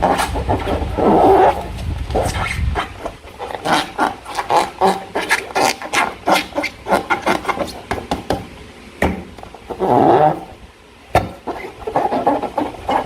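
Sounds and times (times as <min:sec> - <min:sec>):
slime squelching by hand: 0:00.0 - 0:07.9.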